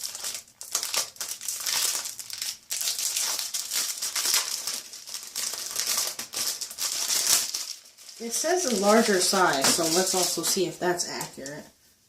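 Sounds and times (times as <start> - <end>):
packaging crinkling and rustling: 0.0 - 11.6.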